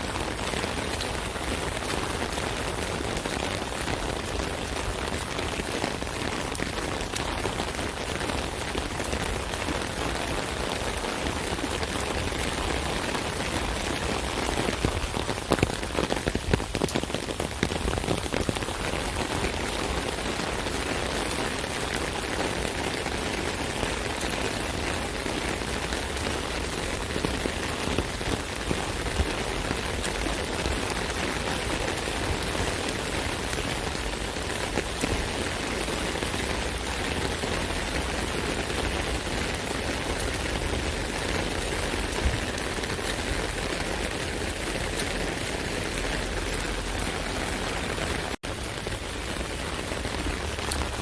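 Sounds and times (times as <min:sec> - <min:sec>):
rain patter on an umbrella: 0:00.0 - 0:51.0.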